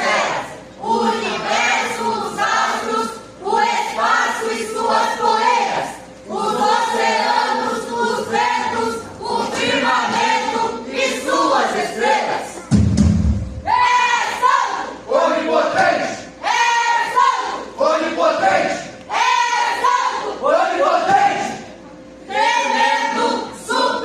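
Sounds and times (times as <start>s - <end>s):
choir of young voices singing: 0.0s - 12.7s, 13.6s - 24.0s.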